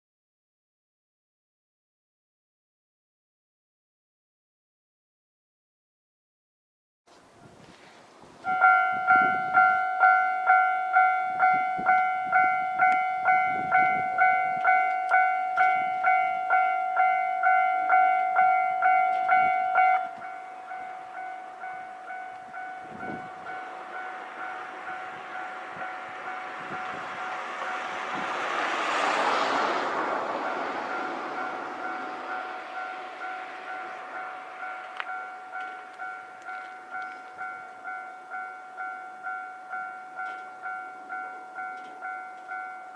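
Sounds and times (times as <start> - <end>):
diesel railcar approaching: 7.1 - 42.9
level crossing alarm bell: 8.4 - 28.5, 30.1 - 42.9.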